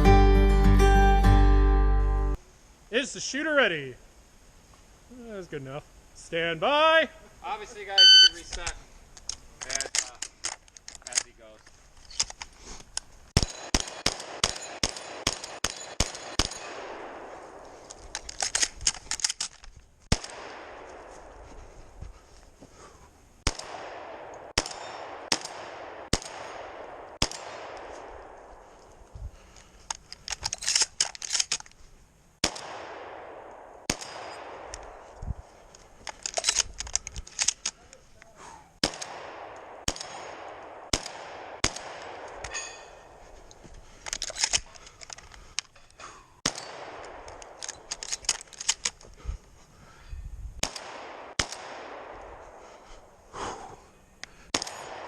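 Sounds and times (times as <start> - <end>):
shotgun shots with echo: 13.4 - 17.6, 23.4 - 28.2, 32.4 - 34.8, 38.8 - 42.5, 50.6 - 52.2, 54.5 - 55.0.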